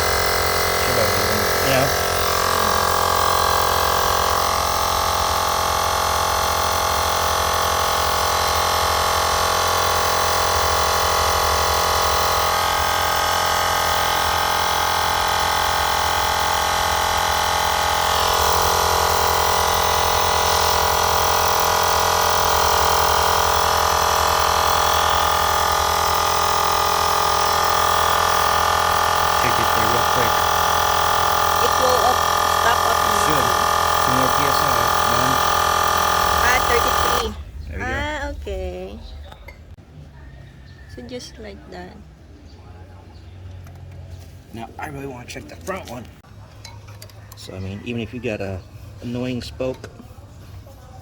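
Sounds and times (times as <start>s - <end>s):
air compressor motor droning: 0.0s - 38.6s.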